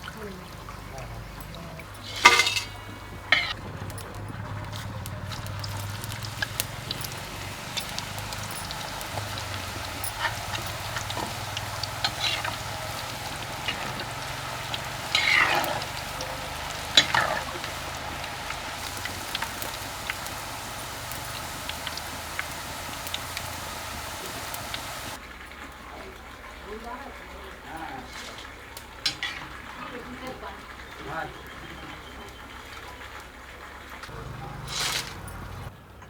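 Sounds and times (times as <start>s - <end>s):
food sizzling in hot oil: 0.0s - 25.2s, 28.0s - 30.4s
oil popping: 0.0s - 25.2s, 34.1s - 35.7s.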